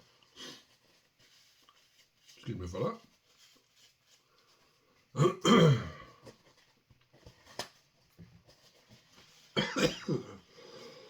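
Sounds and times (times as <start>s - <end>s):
man clearing throat and coughing: 5.2s - 6.1s, 9.6s - 10.4s.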